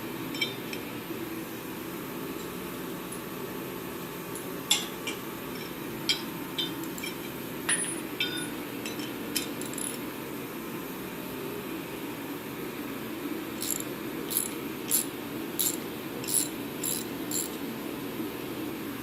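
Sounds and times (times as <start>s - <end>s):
metal tools clinking on metal: 4.7s - 10.0s, 13.6s - 17.6s.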